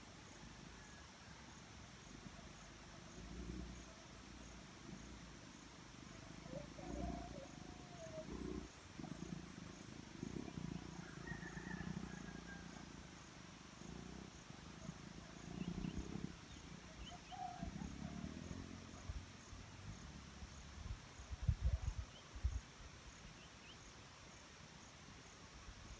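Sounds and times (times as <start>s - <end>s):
faint bird chirps: 0.1s - 13.1s, 13.8s - 24.0s
dove cooing: 6.0s - 19.1s.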